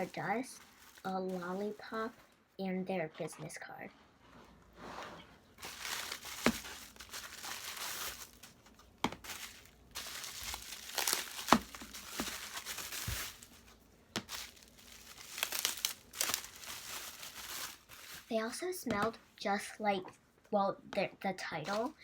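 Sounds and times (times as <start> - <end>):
plastic packaging crinkling: 0.0 - 2.4, 5.6 - 18.4, 21.6 - 22.0.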